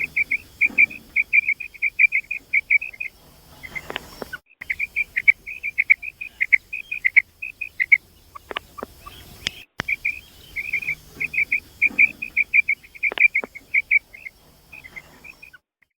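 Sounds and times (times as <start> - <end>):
quail calling: 0.0 - 15.6
sharp clicks: 3.6 - 5.9, 7.8 - 14.0.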